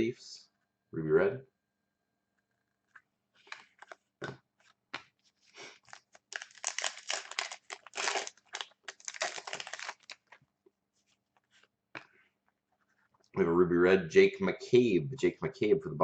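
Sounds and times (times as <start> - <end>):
foil wrapper tearing and crinkling: 5.8 - 10.4.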